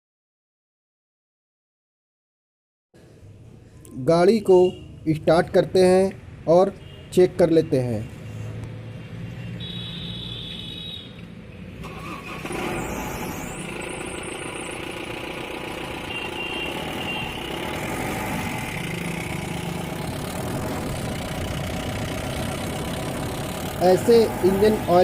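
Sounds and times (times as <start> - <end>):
diesel engine starting and idling: 11.7 - 25.0.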